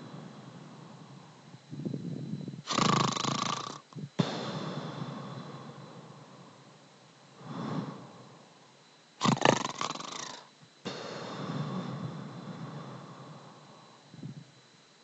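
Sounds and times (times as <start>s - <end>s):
person snoring: 2.7s - 5.8s, 7.4s - 8.5s, 9.2s - 14.4s.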